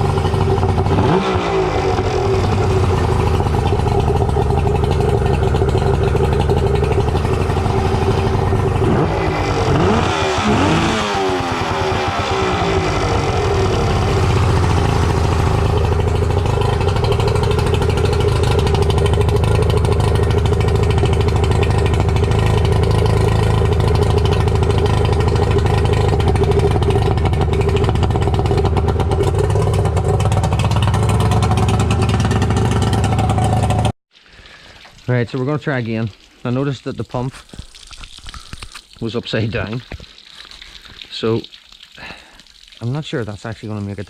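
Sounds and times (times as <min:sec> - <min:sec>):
outboard motor running steadily: 0:00.0 - 0:33.9.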